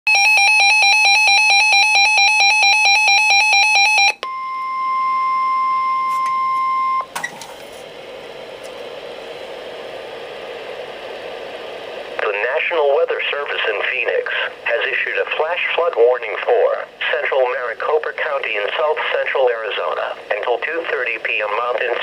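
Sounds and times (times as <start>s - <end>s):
rapid electronic alarm beeping: 0.1s - 4.2s
steady warning alarm tone: 0.1s - 7.1s
radio hiss: 8.9s - 22.0s.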